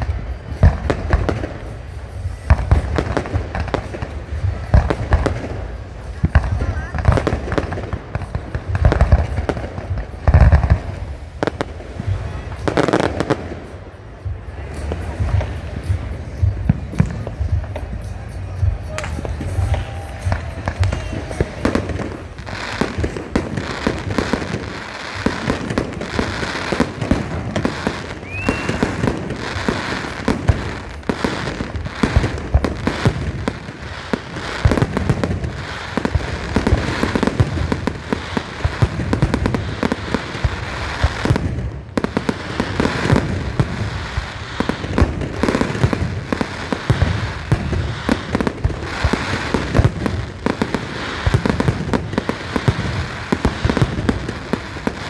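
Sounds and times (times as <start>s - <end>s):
fireworks bursts and crackling: 0.0s - 55.0s
firework whistle rising: 27.9s - 30.1s.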